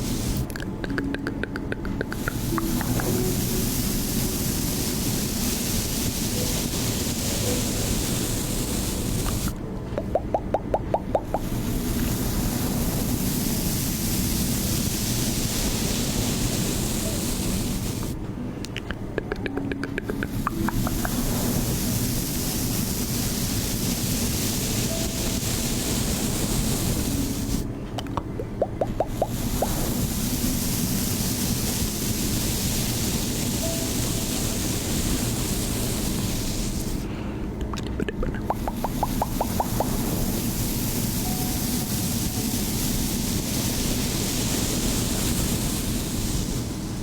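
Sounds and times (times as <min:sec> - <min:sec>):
short bubbly pops: 0:00.0 - 0:03.5, 0:10.0 - 0:11.6, 0:18.7 - 0:21.2, 0:28.0 - 0:29.9, 0:37.6 - 0:40.1
steady rushing noise: 0:00.0 - 0:47.0.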